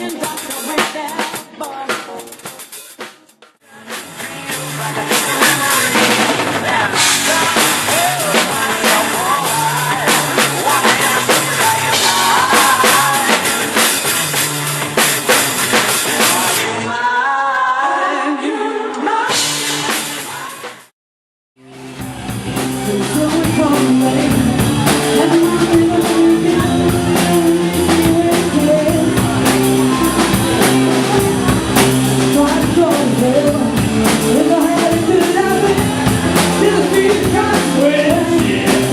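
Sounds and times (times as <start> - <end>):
pop-rock music with singing: 0.0 - 20.9, 21.8 - 38.9
song with strong bass line: 3.7 - 17.0, 21.6 - 38.9.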